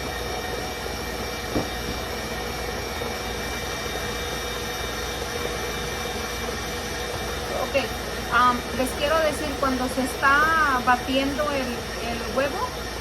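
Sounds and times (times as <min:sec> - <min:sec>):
electric mixer beating batter: 0:00.0 - 0:13.0
short knock: 0:01.5 - 0:02.0.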